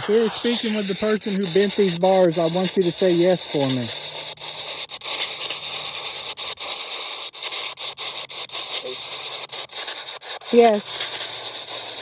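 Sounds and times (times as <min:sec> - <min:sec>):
radio scanner static: 0:00.0 - 0:05.9, 0:08.7 - 0:09.2.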